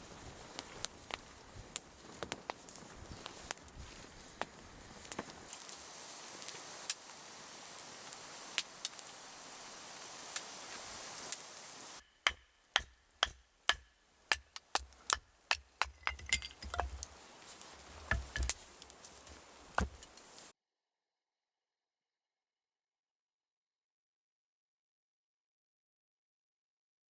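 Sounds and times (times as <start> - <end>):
campfire crackling and popping: 0.0 - 20.5
sharp metallic clinks: 16.0 - 17.2.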